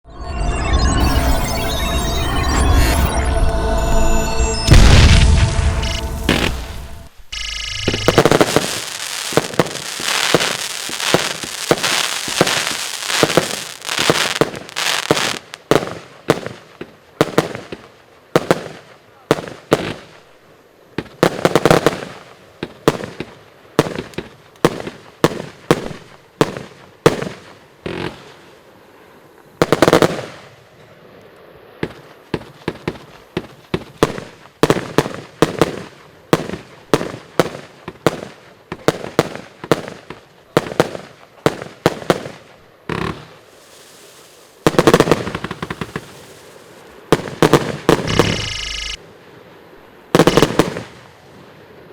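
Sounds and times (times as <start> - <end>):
firework bangs: 4.6 - 16.6, 31.8 - 49.0, 50.2 - 51.1.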